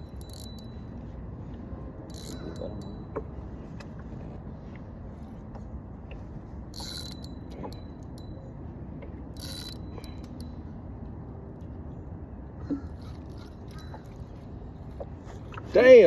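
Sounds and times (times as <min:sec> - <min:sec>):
fishing reel gears clicking: 0:00.0 - 0:01.1, 0:02.1 - 0:03.2, 0:06.7 - 0:08.4, 0:09.3 - 0:10.6.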